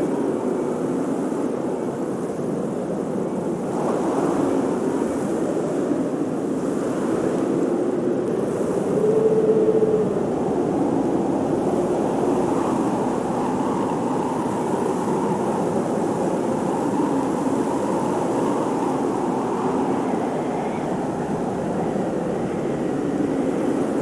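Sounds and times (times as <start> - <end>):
blizzard wind howling: 0.0 - 24.0.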